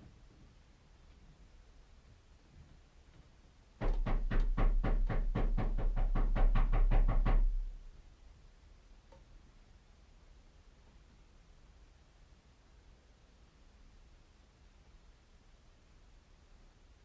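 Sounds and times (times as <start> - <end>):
hard rapid knocking on door: 3.8 - 7.8.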